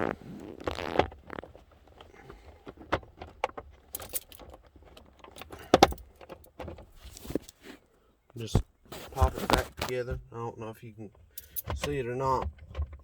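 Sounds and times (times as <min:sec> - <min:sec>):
plastic parts clicking and knocking: 0:02.0 - 0:07.5, 0:11.2 - 0:13.0.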